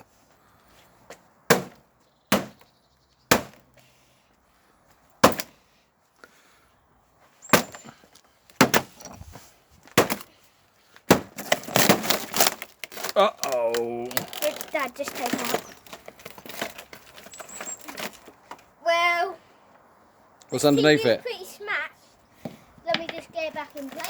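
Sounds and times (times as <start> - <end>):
sharp chopping strikes: 1.5 - 2.6, 3.3 - 3.6, 5.2 - 5.5, 7.5 - 7.8, 8.6 - 8.9, 11.1 - 12.0.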